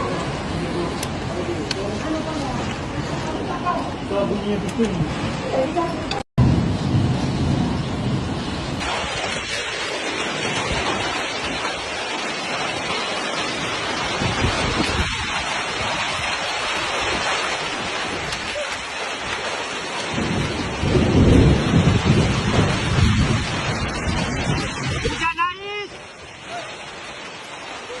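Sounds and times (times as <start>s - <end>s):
low rumble: 6.4s - 8.8s
hail and rain falling: 8.8s - 28.0s.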